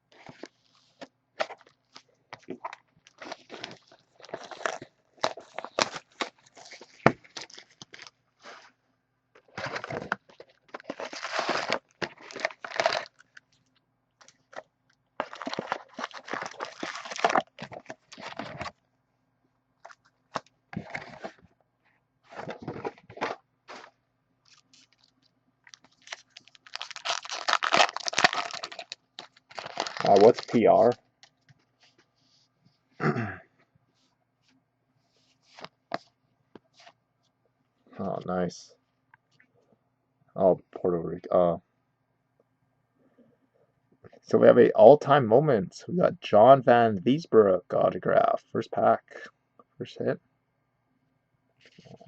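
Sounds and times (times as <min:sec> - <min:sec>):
wrapper crinkling and tearing: 0:02.4 - 0:08.2, 0:09.4 - 0:13.5, 0:15.2 - 0:18.7, 0:24.5 - 0:31.0.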